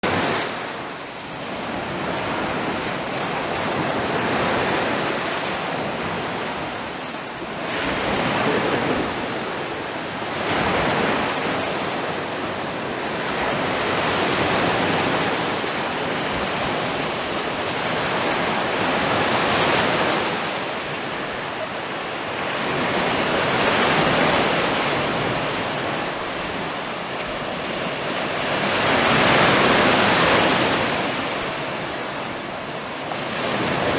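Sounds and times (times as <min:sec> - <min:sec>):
sea waves breaking on beach: 0:00.0 - 0:33.9.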